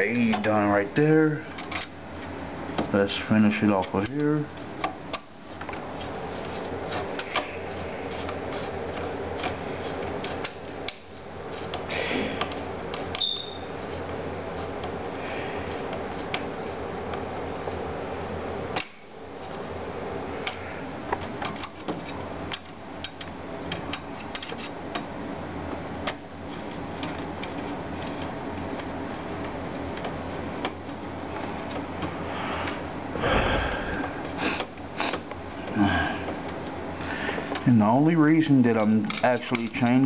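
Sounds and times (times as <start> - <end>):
steady low hum: 0.0 - 40.0
small parts clicking and tapping: 20.4 - 25.1.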